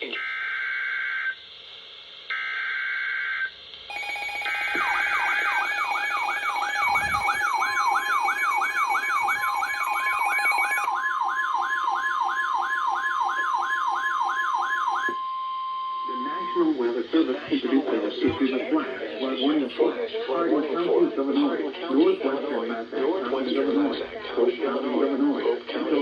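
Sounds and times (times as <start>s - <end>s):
alert tone with sweeping siren: 2.3s - 16.8s
screeching data bursts: 3.9s - 10.9s.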